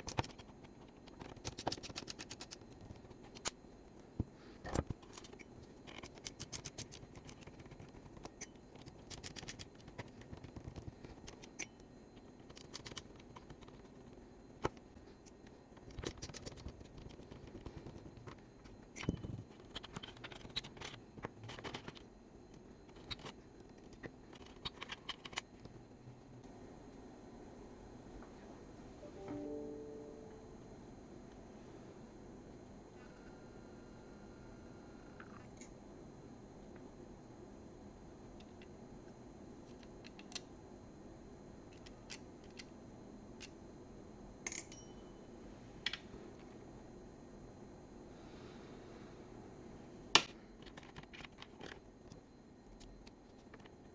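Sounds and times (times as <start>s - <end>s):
steady low hum: 0.0s - 53.9s.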